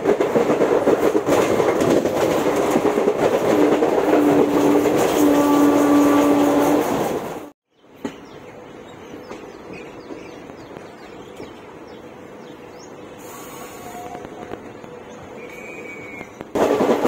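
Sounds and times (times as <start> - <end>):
birds chirping: 7.7 - 16.5.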